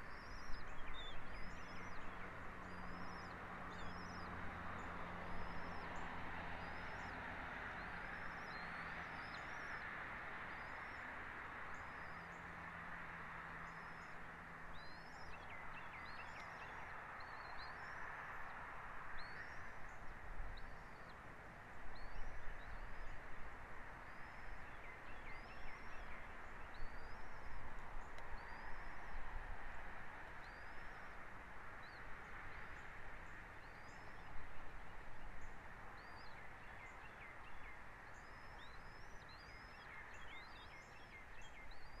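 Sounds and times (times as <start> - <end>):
bird chirping: 0.0 - 7.2, 7.8 - 9.9, 13.6 - 18.1, 24.0 - 29.3, 30.4 - 31.2, 31.8 - 42.0
steady outdoor hiss: 0.0 - 42.0.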